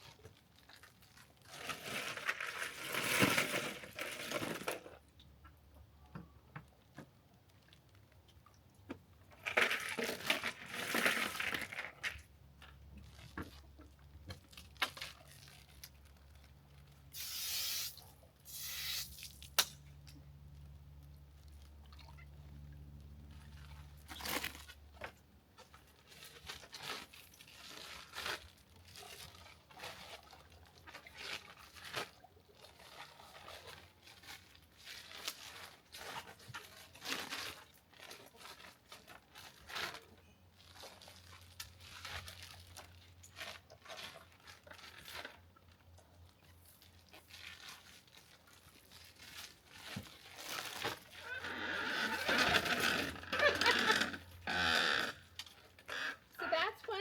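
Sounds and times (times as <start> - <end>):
plastic bags crinkling: 25.9 - 45.8, 46.6 - 51.5.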